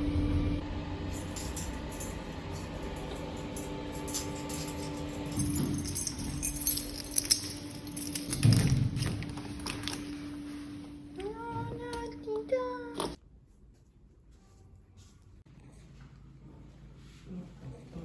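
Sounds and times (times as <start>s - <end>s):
clicks and jangling rattles: 1.1s - 10.1s.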